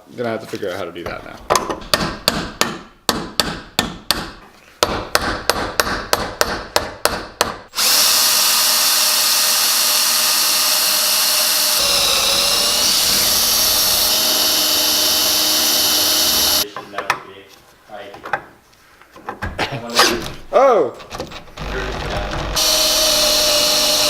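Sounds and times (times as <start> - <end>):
electric drill running: 7.8 - 16.6, 22.5 - 24.0.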